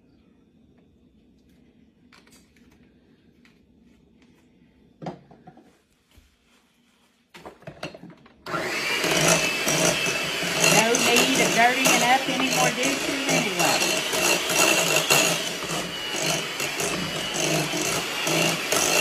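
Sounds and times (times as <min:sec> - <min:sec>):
electric mixer running: 0:08.5 - 0:19.0.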